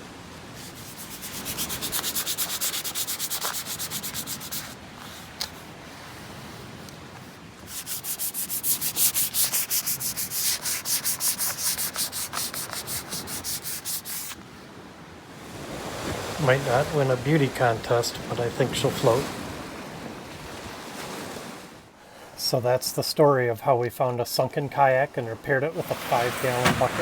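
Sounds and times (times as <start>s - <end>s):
hand sanding plastic: 0.6s - 5.7s, 7.6s - 14.4s, 25.8s - 27.0s.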